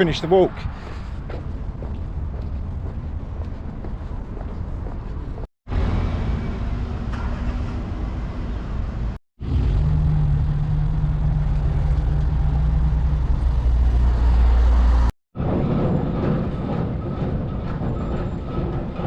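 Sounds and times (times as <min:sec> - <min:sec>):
large engine droning: 0:05.7 - 0:19.0.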